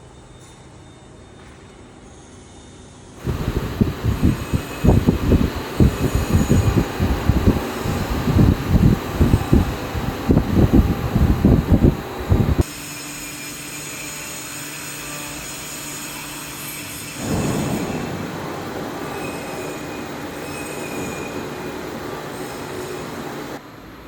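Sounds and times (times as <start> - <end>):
high whine and squeal: 0.0 - 23.6
loud irregular rumbling: 3.2 - 12.6
cnc machine cutting: 3.2 - 23.6.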